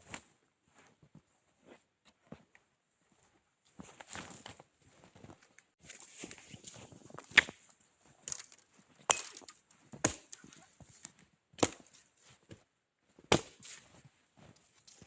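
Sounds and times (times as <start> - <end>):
axe chopping wood: 7.3 - 7.6, 9.1 - 10.6, 11.6 - 12.0, 13.3 - 13.7.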